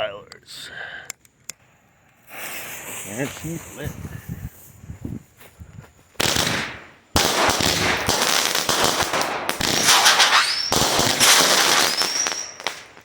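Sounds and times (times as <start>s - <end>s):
firework whines: 2.2s - 5.0s, 6.2s - 13.0s
firework cake shots barrage: 6.2s - 13.0s.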